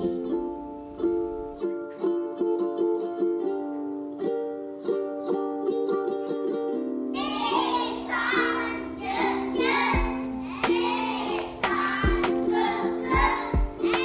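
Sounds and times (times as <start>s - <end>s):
instrumental backing music: 0.0s - 14.0s
child singing: 7.2s - 14.0s
drum beats: 9.8s - 14.0s.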